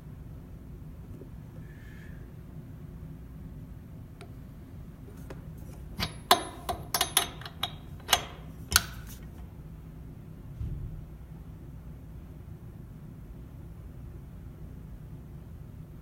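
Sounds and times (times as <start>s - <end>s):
low steady hum: 0.0s - 16.0s
torque wrench ratchet clicking: 6.0s - 9.0s.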